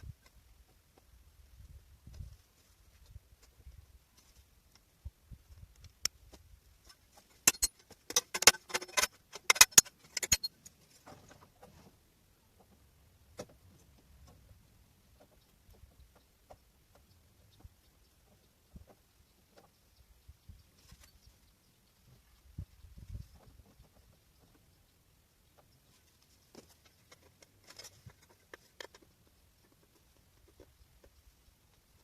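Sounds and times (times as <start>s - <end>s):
metal objects clinking: 7.4s - 10.5s.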